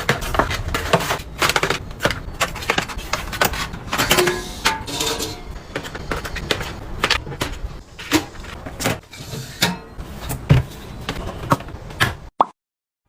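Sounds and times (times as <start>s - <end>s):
containers clicking and knocking: 0.0s - 8.3s.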